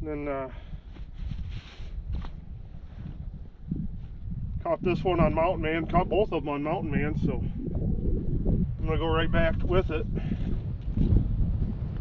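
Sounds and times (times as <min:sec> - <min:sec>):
wind buffeting microphone: 0:00.0 - 0:12.0
rustling scrape: 0:01.0 - 0:03.2.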